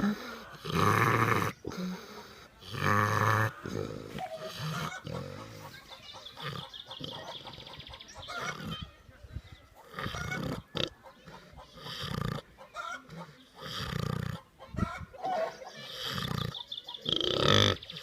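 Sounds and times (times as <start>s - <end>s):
snoring snorts: 0.0s - 2.0s, 2.6s - 5.7s, 9.9s - 10.9s, 11.8s - 12.4s, 13.6s - 14.4s, 15.9s - 18.0s.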